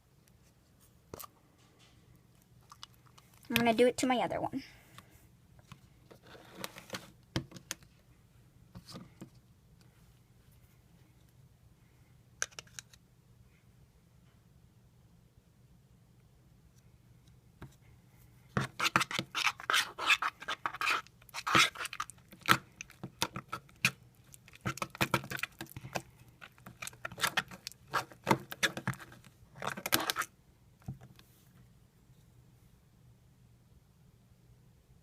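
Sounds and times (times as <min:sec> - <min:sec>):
utensil stirring slime in a bowl: 0:18.6 - 0:30.3.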